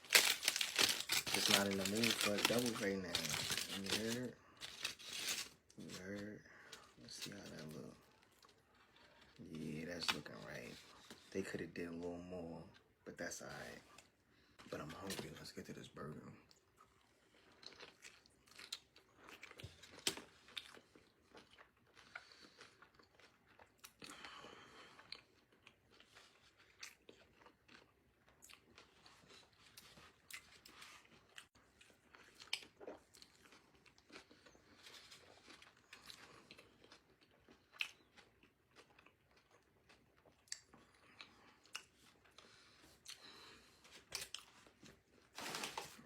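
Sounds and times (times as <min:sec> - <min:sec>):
person chewing food: 0:00.0 - 0:07.0, 0:16.5 - 0:45.3.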